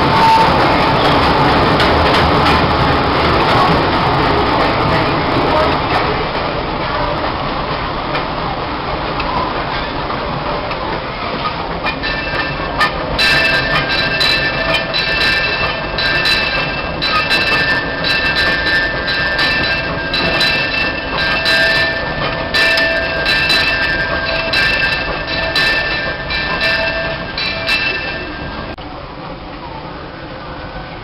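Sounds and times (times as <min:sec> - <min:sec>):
wheel squeal: 0:00.0 - 0:01.2
train rolling rumble: 0:00.0 - 0:31.0.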